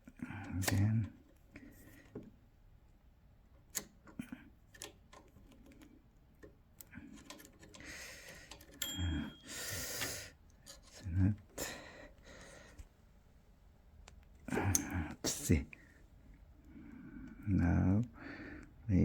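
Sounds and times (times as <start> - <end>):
typewriter key clicks: 0.5 - 1.1
typewriter bell ring: 8.7 - 10.1.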